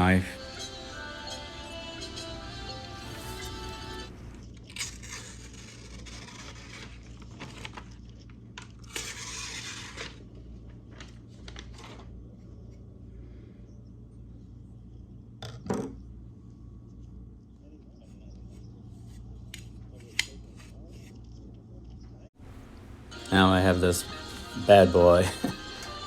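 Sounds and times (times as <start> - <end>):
knife slicing paper: 3.0 - 7.9, 8.8 - 10.2.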